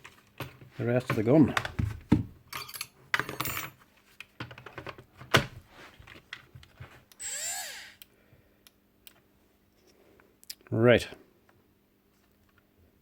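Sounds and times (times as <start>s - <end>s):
small motor whine: 7.2s - 8.0s.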